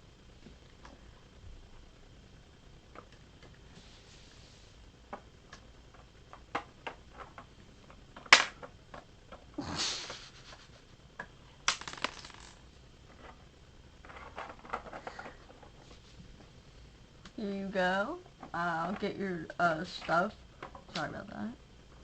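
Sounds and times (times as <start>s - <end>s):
plastic pieces clattering crash: 11.7s - 12.6s.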